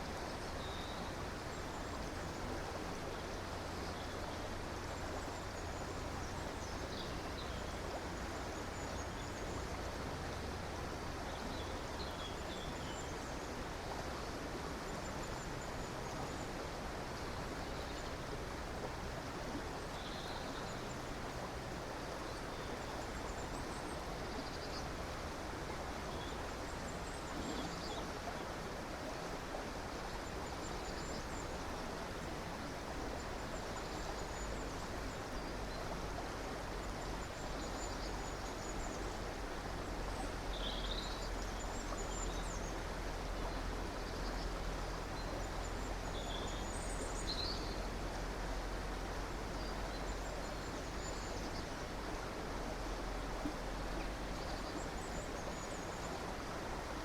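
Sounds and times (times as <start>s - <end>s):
river water rushing: 0.0s - 57.0s.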